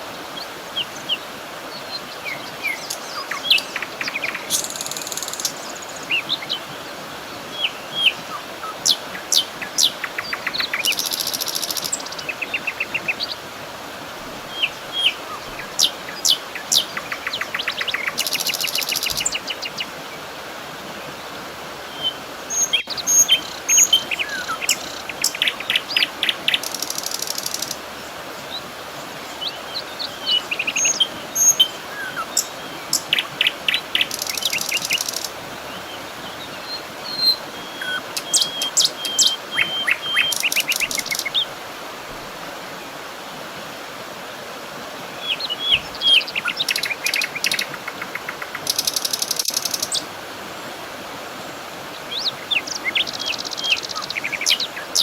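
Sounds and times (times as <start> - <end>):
songbirds chirping and trilling: 0.0 - 13.5, 21.8 - 41.6, 45.2 - 50.2, 51.8 - 55.0
steady background hiss: 0.0 - 55.0.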